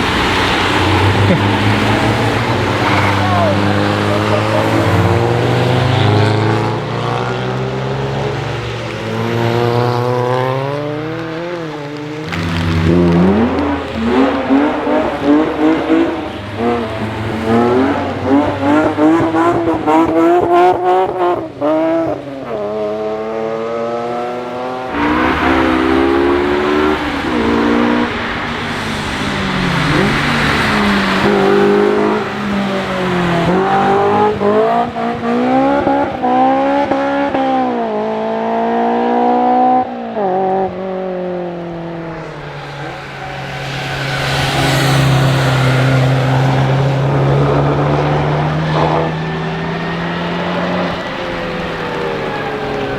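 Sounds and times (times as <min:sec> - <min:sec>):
tyres hissing on wet surface: 0:00.0 - 0:06.1, 0:11.3 - 0:19.2, 0:24.9 - 0:34.7
car engines revving: 0:00.0 - 0:52.9.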